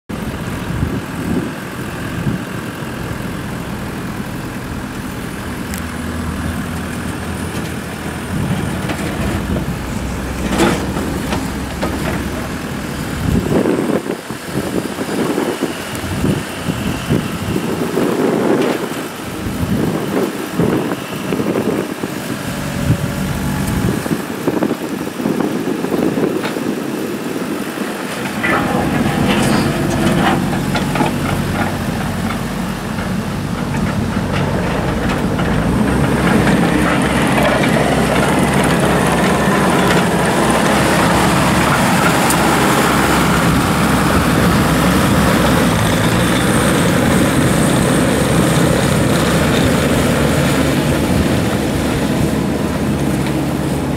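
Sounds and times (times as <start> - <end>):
diesel engine idling: 0.1 - 53.9
uneven loud noise: 28.0 - 35.6.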